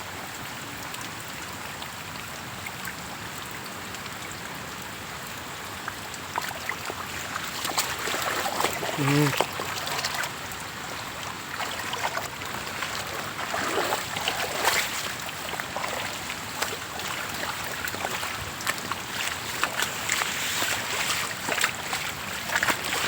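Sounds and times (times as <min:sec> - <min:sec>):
small water splashes: 0:00.8 - 0:23.0
floodwater rushing: 0:04.7 - 0:23.0.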